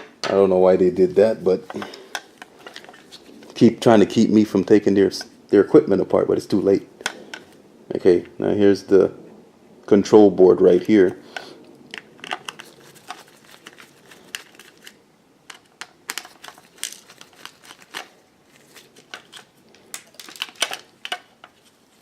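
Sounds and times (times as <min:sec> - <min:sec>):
crinkling rustles: 0:01.0 - 0:04.0, 0:11.9 - 0:22.0.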